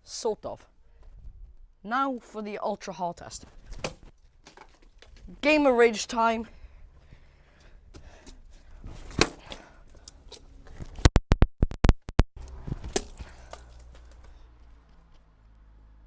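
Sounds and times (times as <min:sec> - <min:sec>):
keyboard being smashed: 0:12.9 - 0:13.9.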